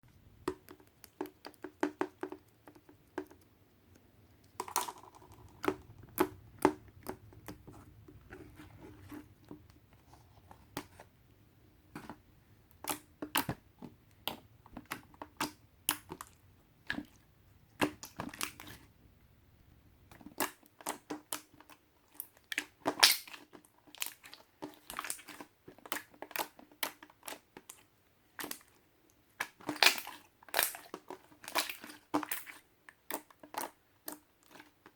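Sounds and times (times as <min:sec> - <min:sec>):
slime squished by hand: 0:22.5 - 0:27.8, 0:29.4 - 0:34.7.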